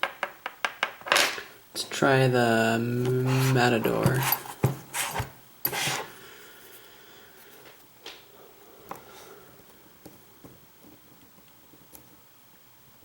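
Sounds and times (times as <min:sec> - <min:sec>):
lock pick scraping metal: 0:03.0 - 0:06.1.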